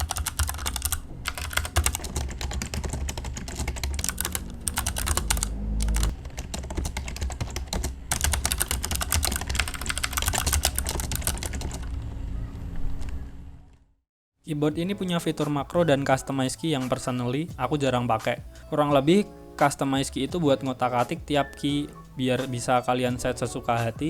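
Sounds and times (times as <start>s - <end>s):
mechanical keyboard typing: 0.0s - 12.0s.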